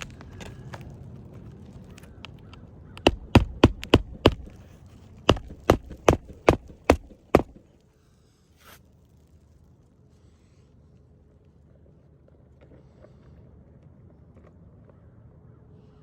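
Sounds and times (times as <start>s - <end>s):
hammer striking shingle roof: 3.0s - 7.7s.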